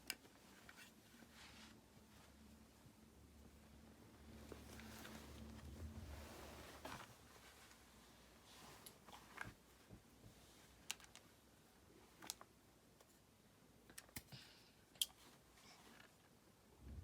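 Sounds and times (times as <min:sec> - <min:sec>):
faint irregular clicks and taps: 0:08.8 - 0:11.4.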